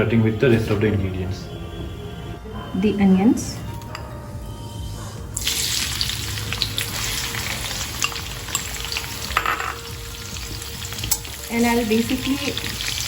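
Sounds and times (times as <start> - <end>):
onions sizzling in hot oil: 5.4 - 13.0.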